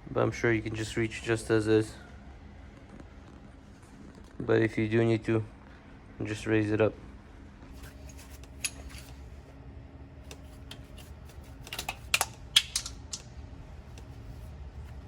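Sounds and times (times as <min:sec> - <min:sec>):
faint low hum: 0:00.0 - 0:15.0
hand tools and metal parts clicking: 0:08.0 - 0:09.2, 0:10.3 - 0:13.2.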